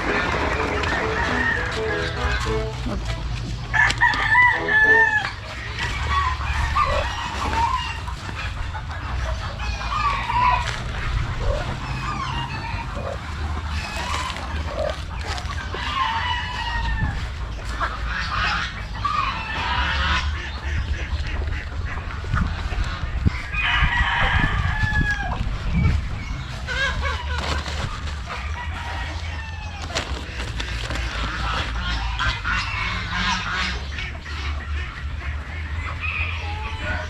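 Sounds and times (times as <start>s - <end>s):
rooster crowing: 0.0s - 2.6s, 3.7s - 5.4s, 15.8s - 17.2s
chickens clucking: 0.0s - 37.0s.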